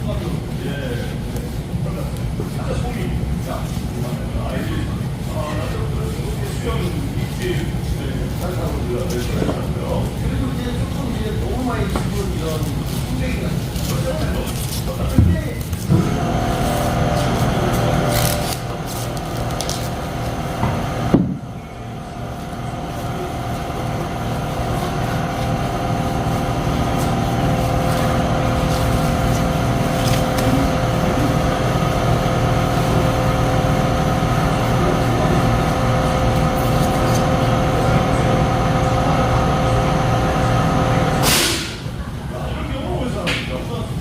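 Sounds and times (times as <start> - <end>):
motor humming with whining tones: 15.2 - 41.2.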